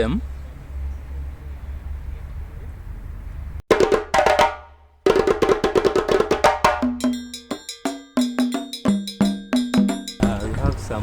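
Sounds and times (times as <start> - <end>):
sharp drum strikes: 3.7 - 10.8.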